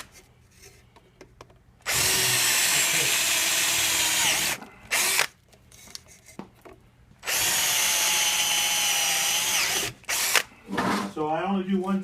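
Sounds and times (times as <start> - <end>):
electric power drill running: 1.8 - 5.3, 7.2 - 10.5.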